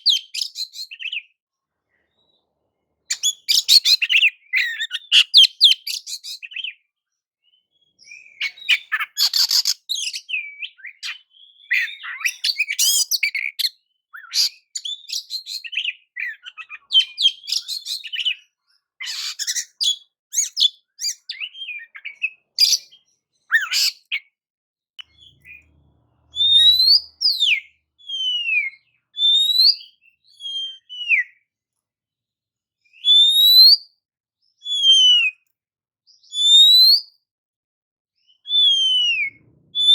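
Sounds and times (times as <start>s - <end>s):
bird singing chattering phrases: 3.1s - 6.8s, 8.1s - 14.9s, 19.0s - 24.3s
bird whistles sliding in pitch: 26.4s - 27.6s.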